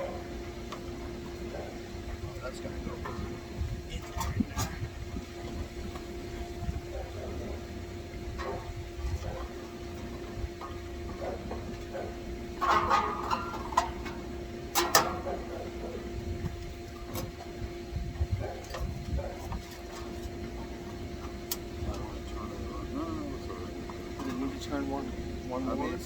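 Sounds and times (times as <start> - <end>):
steady hum: 0.0 - 26.0
tools clicking and clattering: 14.8 - 15.2.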